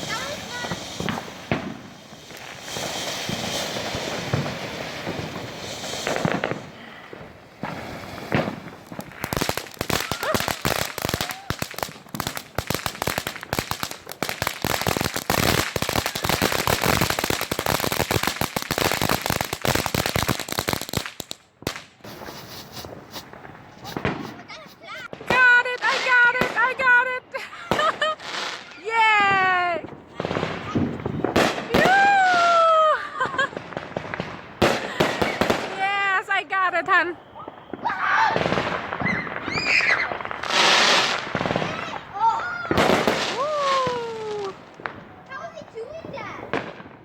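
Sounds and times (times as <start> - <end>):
fireworks hissing: 0.0 - 46.6
fireworks bangs: 0.0 - 47.0
rapid fireworks crackling: 0.0 - 47.0.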